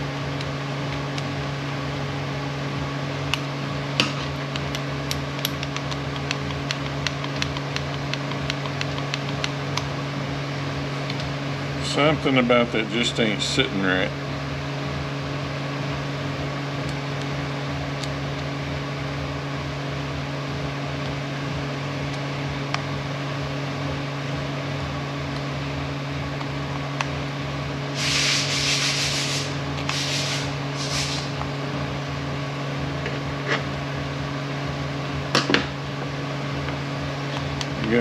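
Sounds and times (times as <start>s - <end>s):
low hum: 14.1s - 37.7s
hissing bursts: 27.9s - 31.4s.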